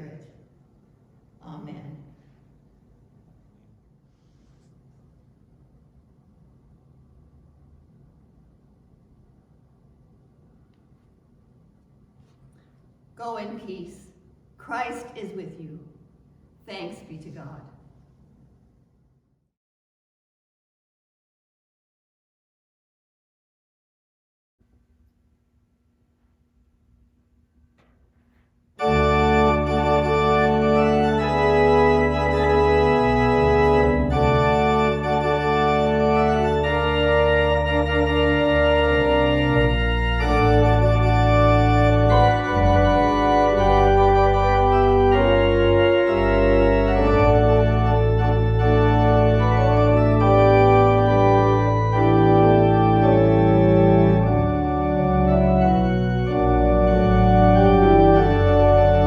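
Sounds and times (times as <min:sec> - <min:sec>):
organ playing sustained chords: 0:28.8 - 0:59.0.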